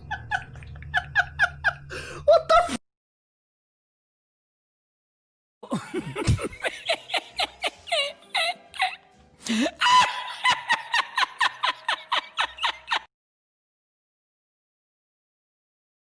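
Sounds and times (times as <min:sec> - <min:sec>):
rhythmic laughter: 0:00.0 - 0:02.8, 0:05.6 - 0:13.1.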